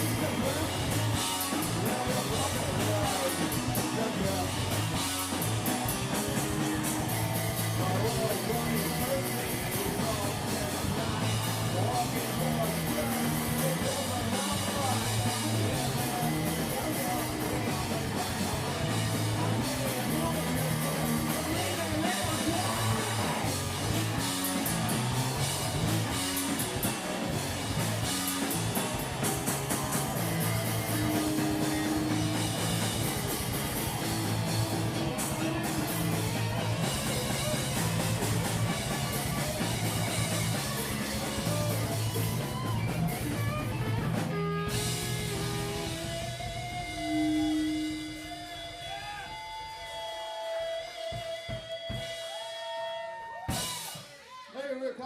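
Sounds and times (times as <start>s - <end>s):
drum kit: 0.0s - 54.4s
guitar: 0.0s - 55.0s
live rock band playing: 0.0s - 55.0s.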